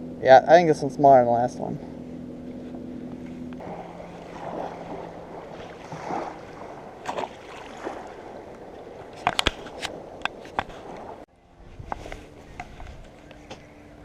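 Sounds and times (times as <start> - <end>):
low hum: 0.0 - 14.0
river water rushing: 1.9 - 11.3.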